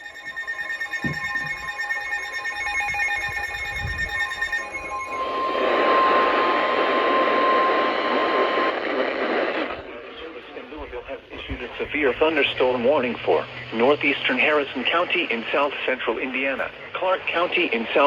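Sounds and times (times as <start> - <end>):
pulsing multi-tone alarm: 0.0 - 10.0
steady high warning tone: 0.0 - 18.0
radio hiss: 4.8 - 18.0.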